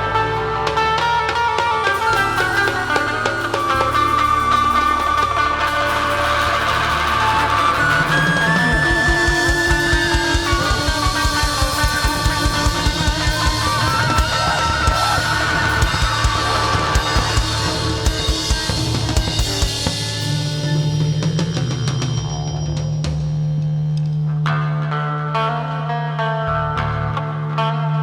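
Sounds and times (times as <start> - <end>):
electric guitars: 0.0 - 22.9, 23.6 - 28.0
fast drum-kit beat: 6.2 - 23.5.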